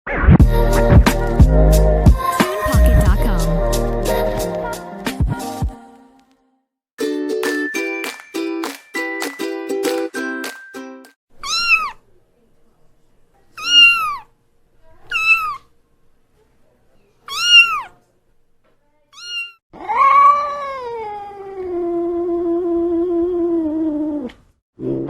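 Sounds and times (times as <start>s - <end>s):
adult cat yowling: 11.4s - 12.0s, 13.6s - 14.3s, 15.1s - 15.7s, 17.3s - 18.0s, 19.1s - 22.2s
kitten meowing: 11.4s - 12.0s, 13.6s - 14.3s, 15.1s - 15.7s, 17.3s - 18.0s, 19.1s - 21.2s.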